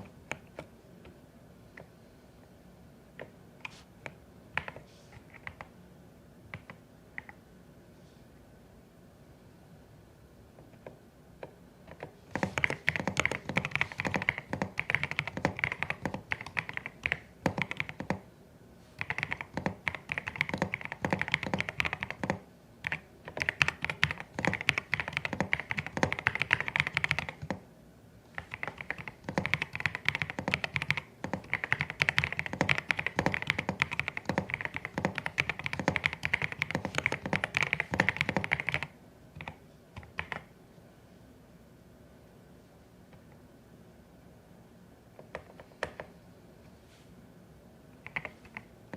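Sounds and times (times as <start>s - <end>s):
mechanical keyboard typing: 11.9s - 18.2s, 19.0s - 27.6s, 28.3s - 40.5s, 48.0s - 48.7s.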